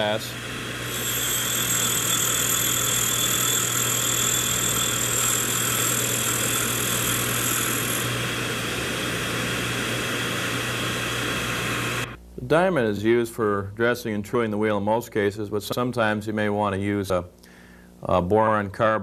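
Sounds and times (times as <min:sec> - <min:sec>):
grinder motor hum: 0:00.0 - 0:12.2.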